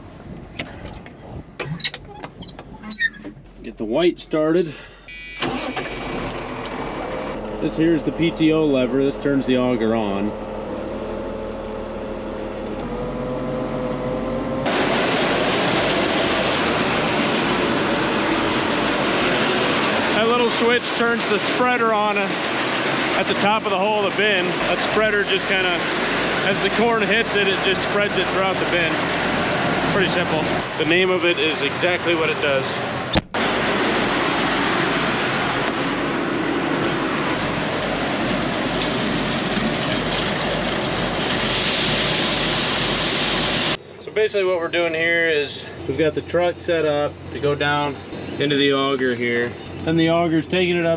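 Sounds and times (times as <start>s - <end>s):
tractor engine humming: 0.0s - 50.9s
grain auger running: 14.6s - 22.2s
grain auger rushing noise: 14.6s - 43.8s.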